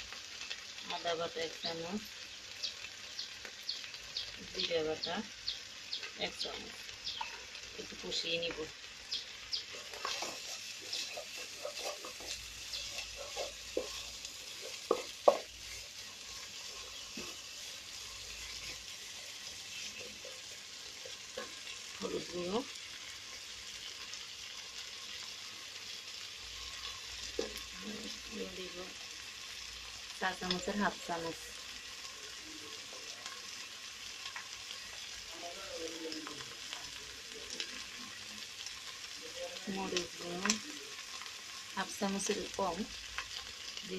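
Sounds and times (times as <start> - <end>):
spice paste sizzling in oil: 0.0 - 43.9
spoon scraping a pan: 9.2 - 22.4, 26.6 - 27.9.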